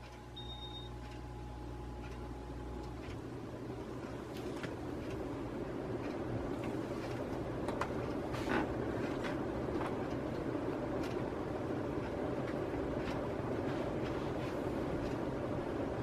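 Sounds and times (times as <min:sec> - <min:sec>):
ceiling fan air rush: 0:00.0 - 0:16.0.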